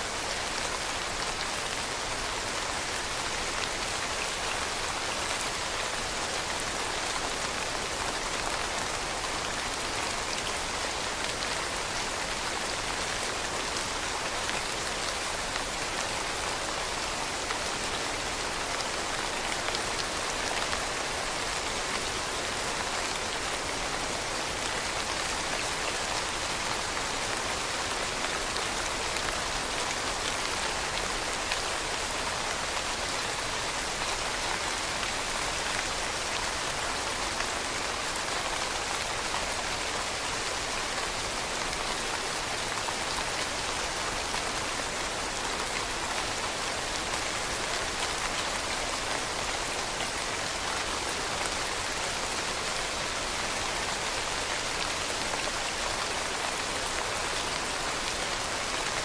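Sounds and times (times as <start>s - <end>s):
rain falling on leaves: 0.0s - 59.0s.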